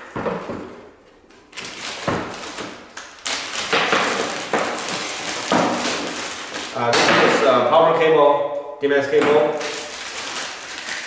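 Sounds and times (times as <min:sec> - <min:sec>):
rustling: 0:01.3 - 0:06.9, 0:09.6 - 0:11.0.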